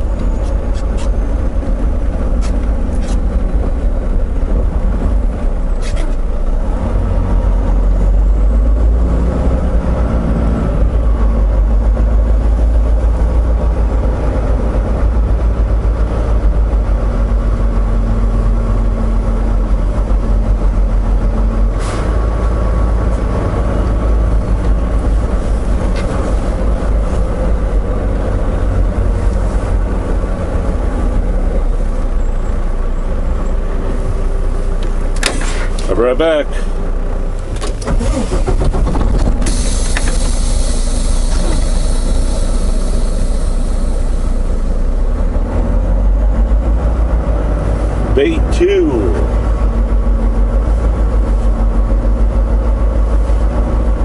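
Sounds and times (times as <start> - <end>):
truck engine and road rumble: 0.0 - 54.0.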